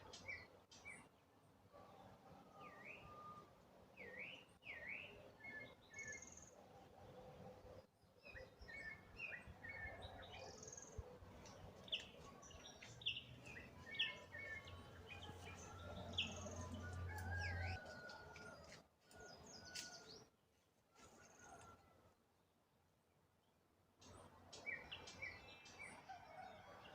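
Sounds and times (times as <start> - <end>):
wild birds chirping: 0.0 - 20.3.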